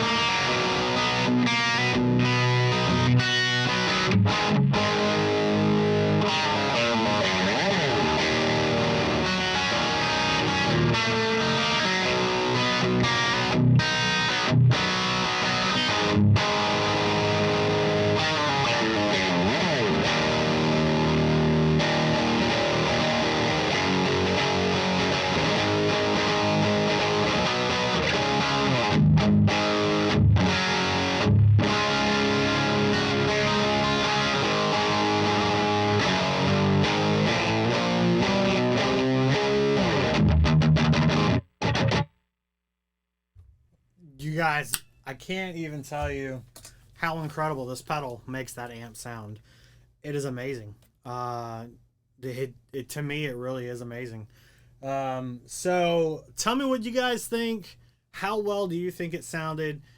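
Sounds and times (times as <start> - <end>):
overdriven electric guitar playing: 0.0 - 42.1.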